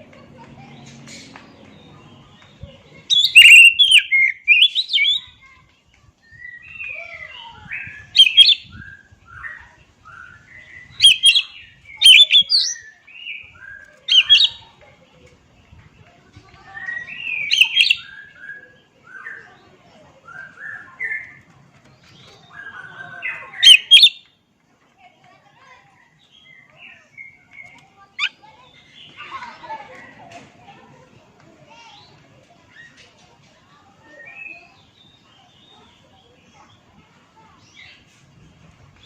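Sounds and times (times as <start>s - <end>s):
bird singing whistled phrases: 3.1s - 5.4s, 6.3s - 14.6s, 16.8s - 19.5s, 22.5s - 24.3s.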